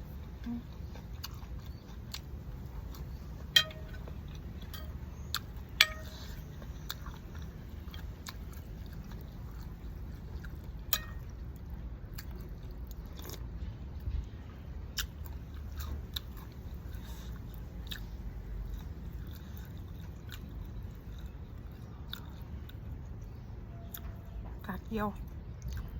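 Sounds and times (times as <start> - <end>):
person chewing and crunching food: 0.0 - 13.6, 14.9 - 23.0, 25.6 - 25.9.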